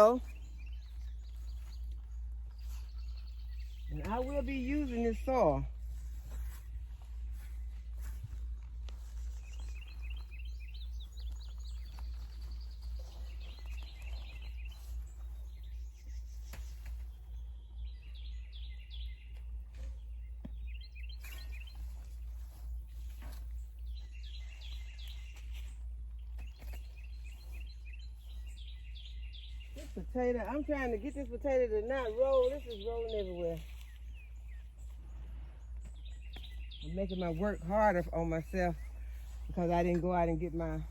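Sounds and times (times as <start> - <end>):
songbird chirping: 0.0 - 40.9
steady low hum: 0.0 - 40.9.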